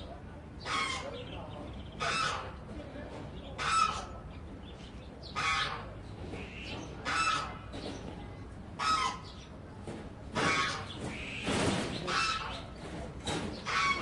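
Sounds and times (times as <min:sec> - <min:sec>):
bird giving harsh raspy calls: 0:00.6 - 0:02.6, 0:03.6 - 0:04.2, 0:05.2 - 0:07.8, 0:08.8 - 0:09.5, 0:10.4 - 0:12.8, 0:13.5 - 0:14.0.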